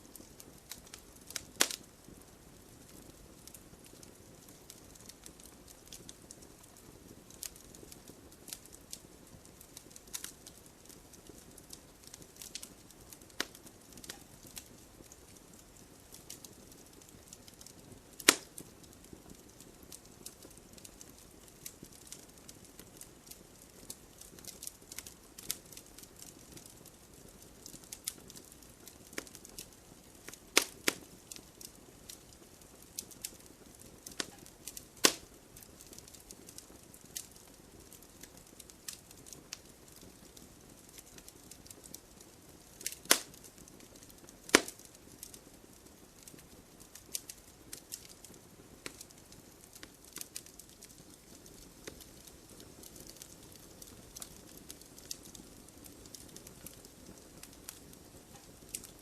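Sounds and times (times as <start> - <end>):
campfire crackling and popping: 0.0 - 59.0
soft steady hiss: 0.0 - 59.0
loud wood snaps: 18.2 - 18.5, 35.0 - 35.2, 42.8 - 43.4, 44.5 - 44.8.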